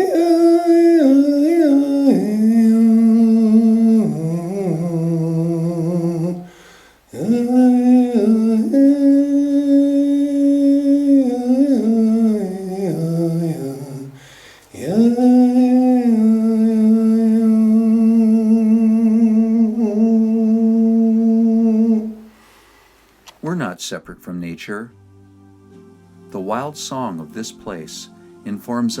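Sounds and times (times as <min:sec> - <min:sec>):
person humming and singing: 0:00.0 - 0:22.3.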